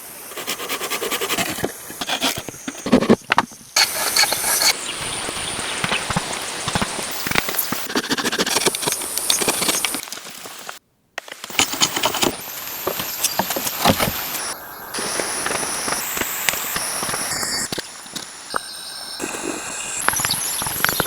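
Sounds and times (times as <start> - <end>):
tools knocking and scraping wood: 0.4 - 10.7, 11.4 - 17.2.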